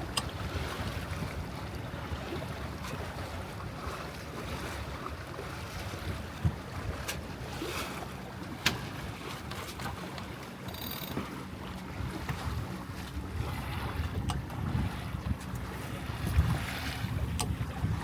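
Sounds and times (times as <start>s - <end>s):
water washing along hull: 0.0s - 18.0s
wind buffeting microphone: 11.8s - 18.0s.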